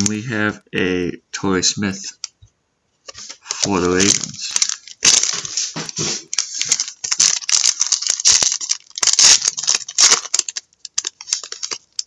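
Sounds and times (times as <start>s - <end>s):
cards scraping and flicking: 3.0s - 12.0s.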